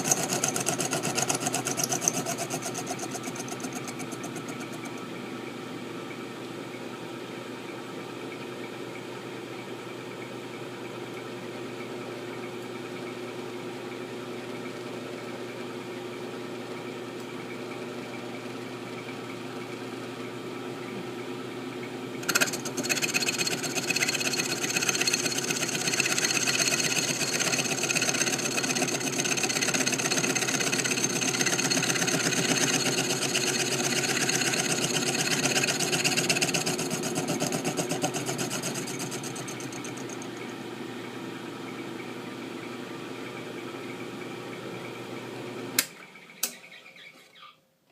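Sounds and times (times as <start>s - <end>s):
milling machine cutting steel: 0.0s - 5.0s, 22.2s - 40.5s
sharp click: 45.8s - 46.6s.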